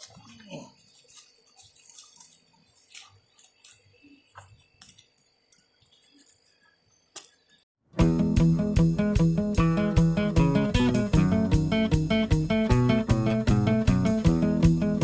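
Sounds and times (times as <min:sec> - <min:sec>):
hands rustling through growing medium: 0:00.0 - 0:07.6
acoustic guitar music: 0:08.0 - 0:15.0.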